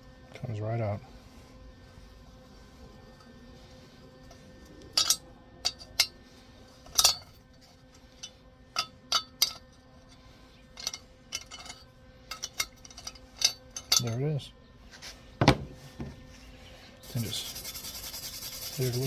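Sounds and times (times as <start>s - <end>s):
wrench clinking on metal: 4.9s - 6.2s, 6.9s - 7.3s, 8.2s - 9.7s, 10.8s - 14.2s.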